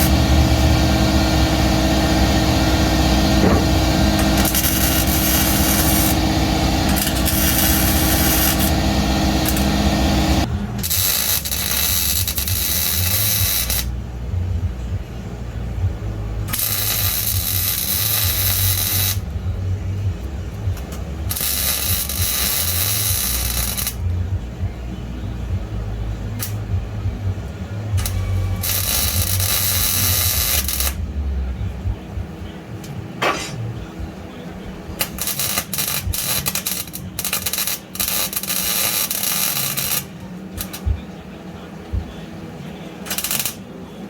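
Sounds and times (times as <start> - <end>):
tack-weld crackles: 0.0 - 13.9, 16.5 - 19.4, 20.2 - 24.1, 26.4 - 26.7, 27.8 - 31.0, 32.8 - 41.0, 42.0 - 43.6
steady low hum: 0.0 - 37.9, 40.0 - 44.0
arc welder crackling and hissing: 0.0 - 44.0.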